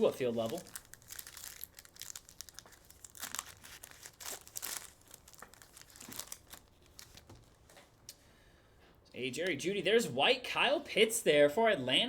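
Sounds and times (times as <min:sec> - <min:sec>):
foil wrappers crinkling and tearing: 0:00.0 - 0:07.4.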